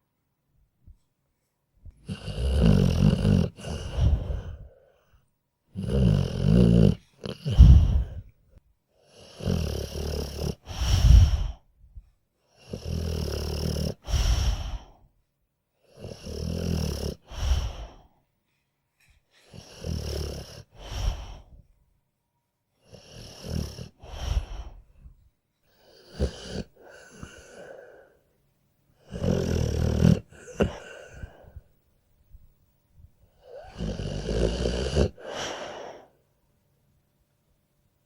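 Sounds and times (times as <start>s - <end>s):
dog snoring: 1.9s - 4.8s, 5.7s - 8.4s, 9.0s - 11.6s, 12.6s - 15.0s, 15.8s - 18.1s, 19.4s - 21.6s, 22.8s - 25.0s, 25.8s - 28.2s, 29.0s - 31.7s, 33.3s - 36.1s.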